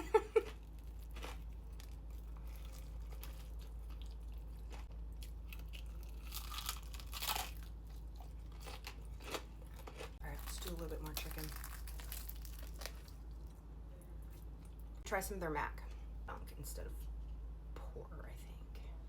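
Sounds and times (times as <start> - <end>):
chewing crispy food crunches: 0.4 - 13.6.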